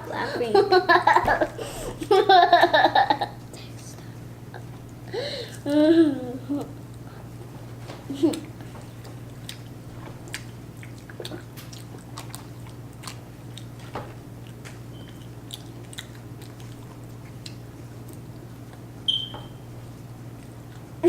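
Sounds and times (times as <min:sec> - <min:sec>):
chewing and biting food: 0:08.3 - 0:18.9.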